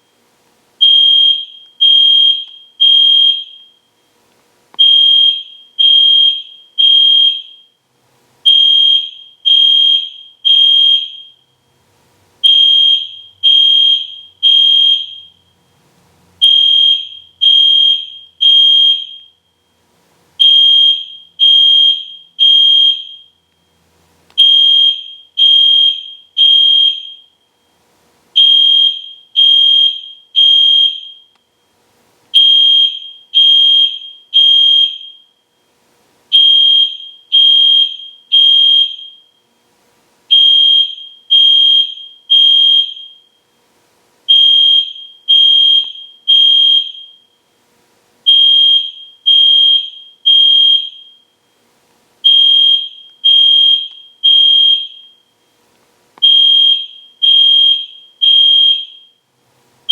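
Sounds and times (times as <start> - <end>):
fire alarm horn blasts: 0.8 - 3.9, 4.8 - 7.8, 8.4 - 11.4, 12.4 - 15.5, 16.4 - 19.6, 20.4 - 23.3, 24.4 - 27.7, 28.4 - 31.7, 32.4 - 35.6, 36.3 - 39.5, 40.3 - 43.5, 44.3 - 47.5, 48.3 - 51.4, 52.2 - 55.4, 56.2 - 59.2.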